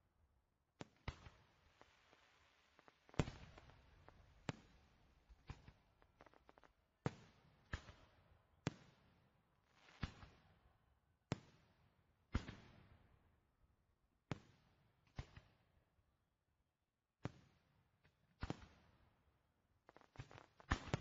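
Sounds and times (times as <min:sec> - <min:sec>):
fireworks crackles: 0:00.9 - 0:06.7, 0:19.8 - 0:21.0.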